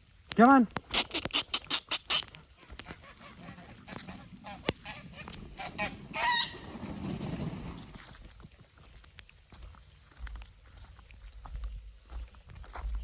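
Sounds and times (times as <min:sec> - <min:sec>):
geese honking: 0:01.0 - 0:06.8.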